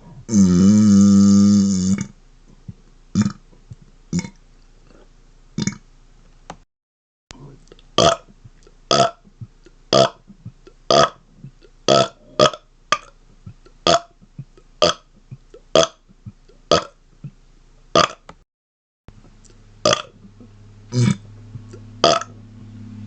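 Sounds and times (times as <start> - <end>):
man burping: 0.3 - 2.1, 19.8 - 20.1, 20.9 - 21.2.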